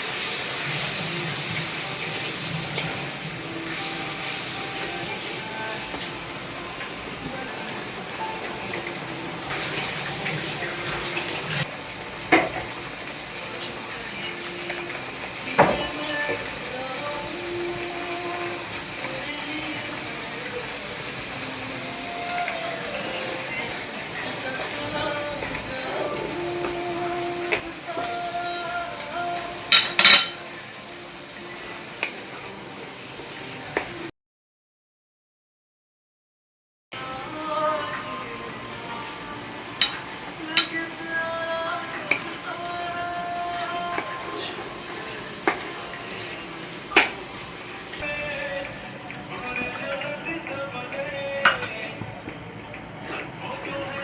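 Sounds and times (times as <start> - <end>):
frying hiss: 0.0 - 34.1, 37.0 - 54.0
metal utensil clattering on pan: 29.7 - 30.4, 39.8 - 40.0.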